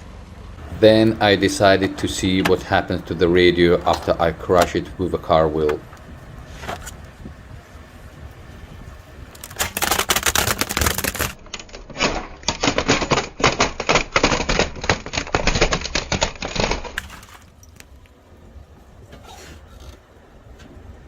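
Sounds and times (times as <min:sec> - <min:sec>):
plastic cracking and snapping: 0:09.3 - 0:17.9.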